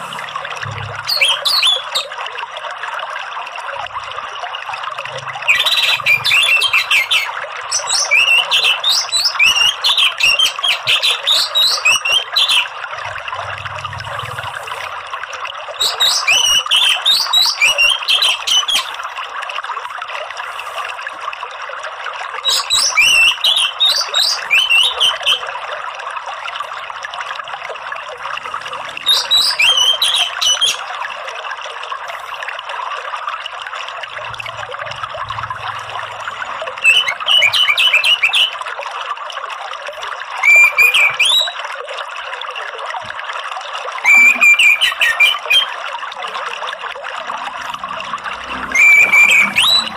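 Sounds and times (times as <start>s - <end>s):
thrush singing twitters: 0.0s - 2.2s, 5.1s - 14.9s, 15.7s - 19.0s, 22.4s - 25.5s, 28.9s - 30.9s, 34.3s - 38.6s, 40.4s - 41.6s, 44.0s - 45.8s, 47.3s - 49.9s
running water: 0.0s - 49.9s.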